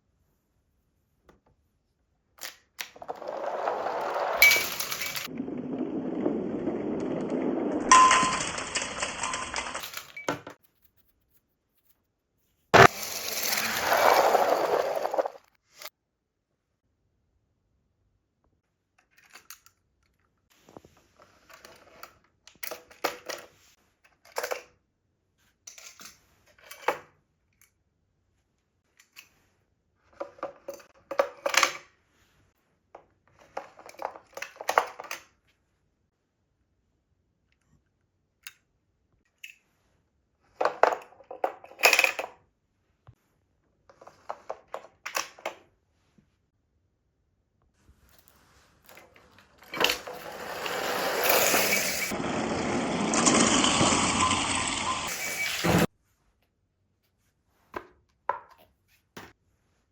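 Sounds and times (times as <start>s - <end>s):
toys clattering down wooden run: 2.8s - 10.2s, 12.8s - 15.5s, 49.6s - 54.9s.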